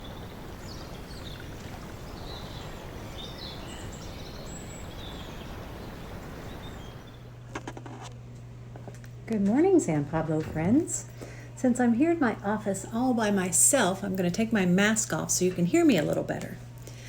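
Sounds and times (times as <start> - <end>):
birds chirping: 0.0 - 7.3.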